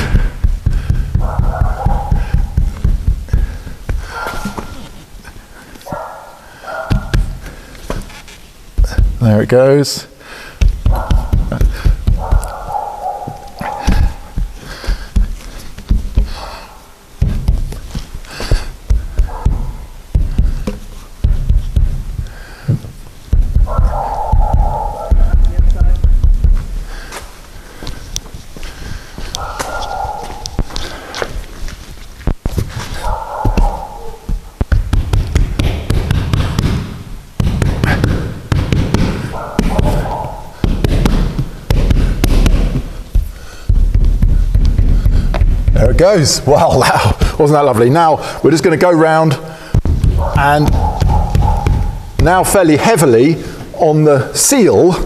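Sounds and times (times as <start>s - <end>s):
hands knocking on windscreen: 0.0s - 4.7s, 10.6s - 12.5s, 13.3s - 16.4s, 17.2s - 26.7s, 32.3s - 36.8s, 37.4s - 46.0s
dull thumps on glass: 0.0s - 4.8s, 6.9s - 8.1s, 8.8s - 9.2s, 10.6s - 16.6s, 17.2s - 26.7s, 32.3s - 46.0s, 49.7s - 52.6s
rubber squeaking: 0.0s - 6.1s, 10.6s - 26.7s, 29.3s - 47.0s, 49.8s - 53.0s.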